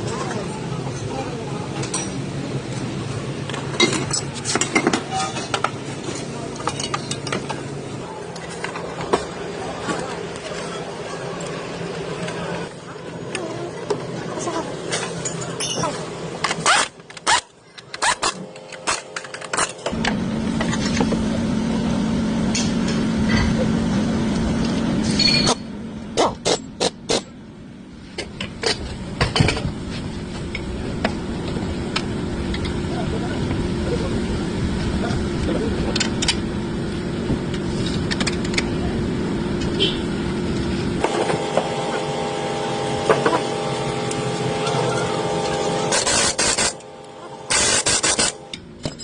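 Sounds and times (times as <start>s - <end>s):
mechanical hum: 0.0s - 49.0s
car engine and road rumble: 16.1s - 49.0s.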